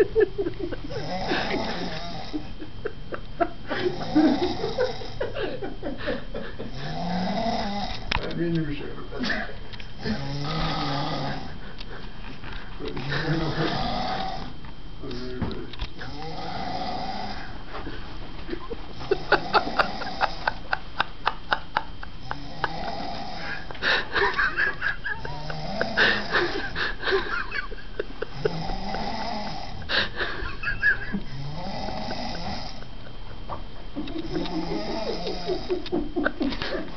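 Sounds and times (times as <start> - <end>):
person snoring: 0.9 - 2.6, 3.6 - 5.3, 6.2 - 8.1, 10.0 - 11.6, 12.8 - 14.5, 16.0 - 17.6, 19.0 - 20.7, 22.2 - 27.3, 28.2 - 30.5, 31.1 - 32.8, 34.2 - 35.9.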